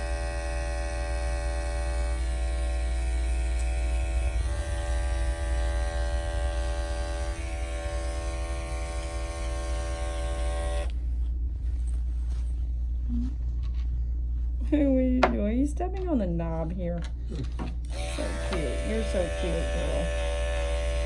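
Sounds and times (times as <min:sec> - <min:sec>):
electric clippers running: 0:00.0 - 0:11.0, 0:17.8 - 0:21.0
steady low hum: 0:00.0 - 0:21.0.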